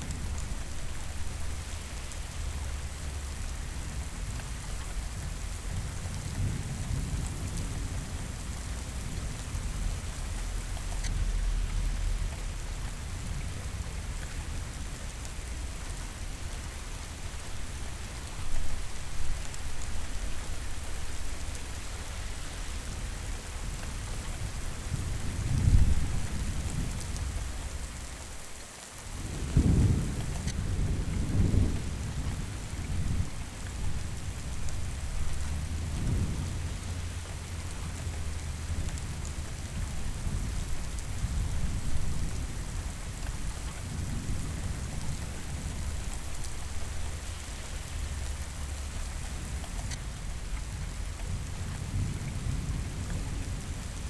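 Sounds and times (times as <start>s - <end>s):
steady rain: 0.0s - 54.0s
thunder rumbling: 29.2s - 49.6s.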